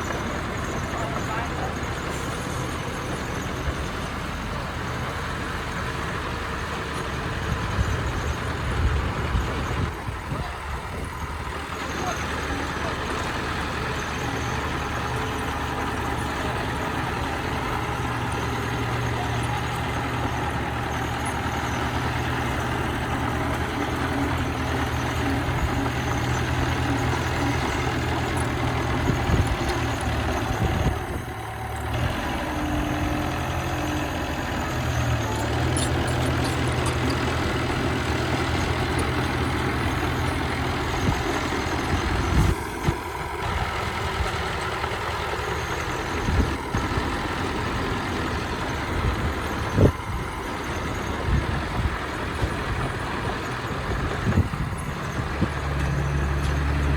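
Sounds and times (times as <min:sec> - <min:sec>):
bulldozer diesel engine running: 0:00.0 - 0:56.9.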